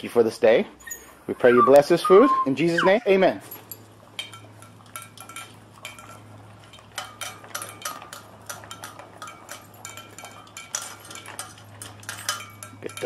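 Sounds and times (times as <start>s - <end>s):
dog eating kibble from bowl: 3.3s - 13.0s.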